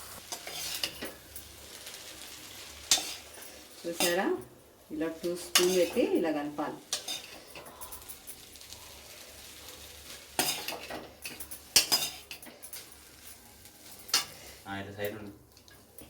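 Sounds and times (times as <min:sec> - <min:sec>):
spoon stirring in a pan: 0:00.1 - 0:04.4, 0:05.1 - 0:14.6
spoon clinking against pan: 0:02.9 - 0:04.5, 0:05.4 - 0:06.2, 0:06.9 - 0:08.5, 0:10.4 - 0:13.1.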